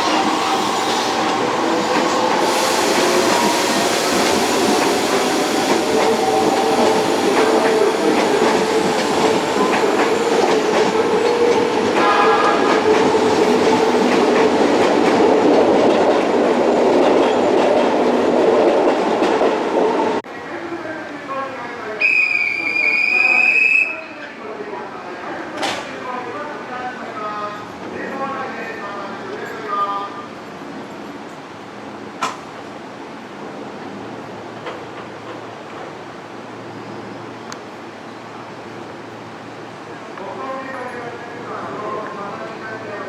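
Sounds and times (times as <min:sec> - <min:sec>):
train wheels rumbling on rails: 0:00.0 - 0:20.2, 0:33.4 - 0:39.3.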